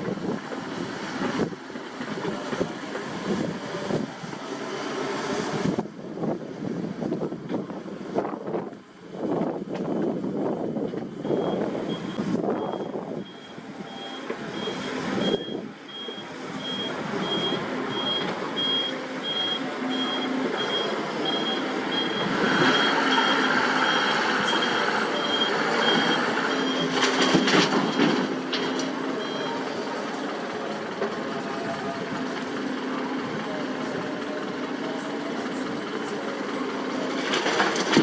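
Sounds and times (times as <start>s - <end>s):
diesel engine running: 0.0s - 38.0s
backup alarm beeping: 11.3s - 28.0s.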